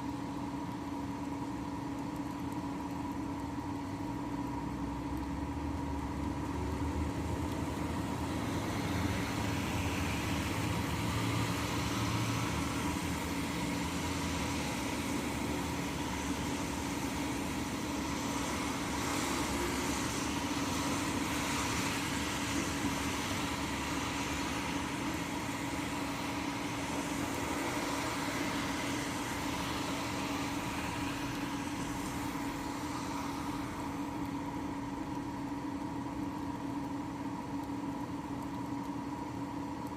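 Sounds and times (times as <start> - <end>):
mechanical hum: 0.0 - 39.9
steady rain falling: 6.4 - 34.5.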